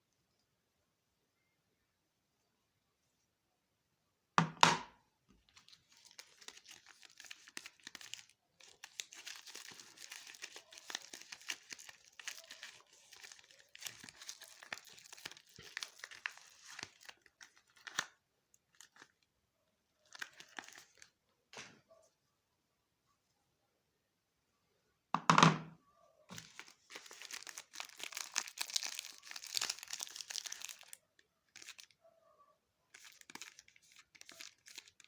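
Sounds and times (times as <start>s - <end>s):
wrapper tearing: 5.5s - 18.1s, 26.3s - 31.9s, 32.9s - 35.0s
wrapper crinkling: 5.5s - 19.2s, 20.0s - 21.1s, 26.3s - 32.0s, 32.9s - 35.0s.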